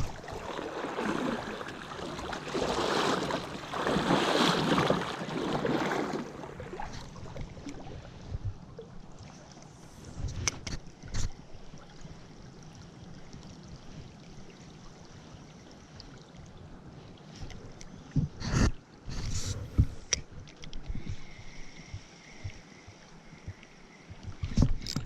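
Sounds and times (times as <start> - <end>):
knocks and sloshing: 0.0 - 9.4
stream water running: 0.0 - 25.0.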